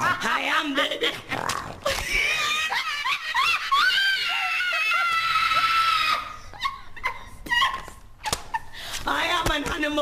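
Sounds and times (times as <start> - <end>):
woman shrieking laugh: 1.9 - 8.8.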